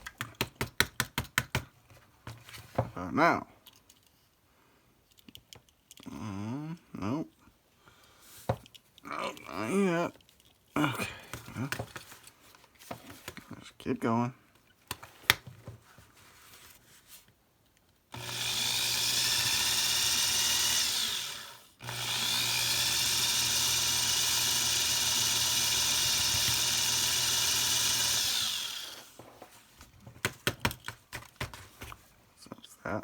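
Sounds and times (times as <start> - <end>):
electric drill drilling metal: 18.1 - 29.2.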